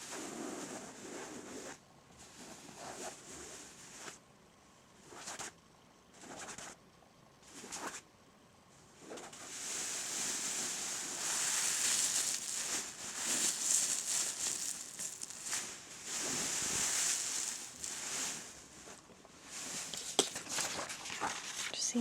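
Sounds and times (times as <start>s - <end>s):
rustling scratching from handling: 9.0s - 21.8s.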